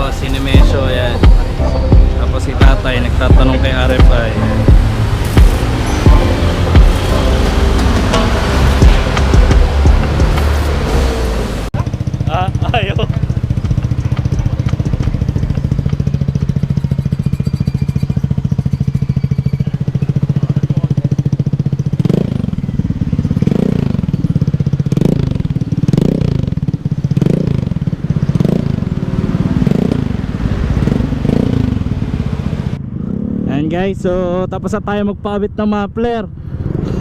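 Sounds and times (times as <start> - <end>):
scooter engine idling: 11.7 - 32.8
scooter throttle blips: 11.8 - 32.1.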